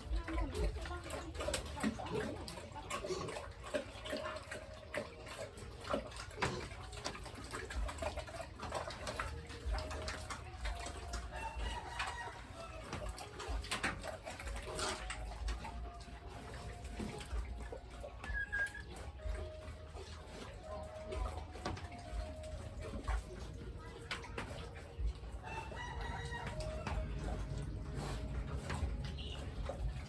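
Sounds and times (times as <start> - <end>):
chickens clucking: 0.0 - 30.0
low rumble: 26.6 - 30.0.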